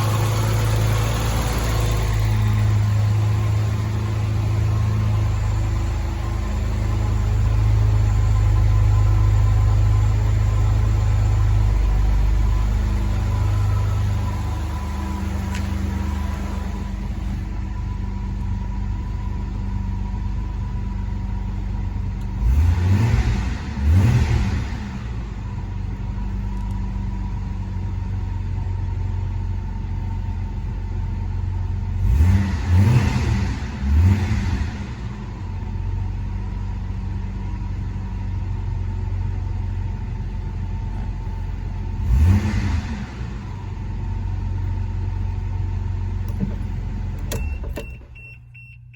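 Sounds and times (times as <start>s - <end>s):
engine revving: 0.0s - 18.0s, 22.2s - 25.5s, 32.0s - 35.5s, 41.8s - 46.4s
car engine idling: 0.0s - 48.9s.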